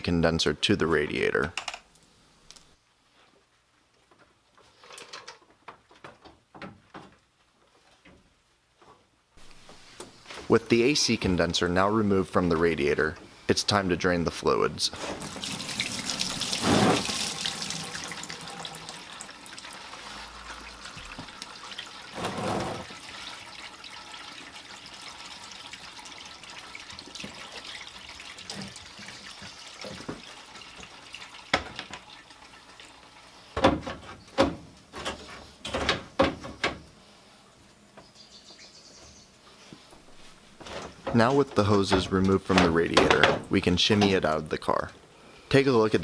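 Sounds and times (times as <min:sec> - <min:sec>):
coolant pouring into drain pan: 0:15.1 - 0:33.3
sharp knocks and clunks: 0:33.6 - 0:36.8, 0:40.6 - 0:44.2.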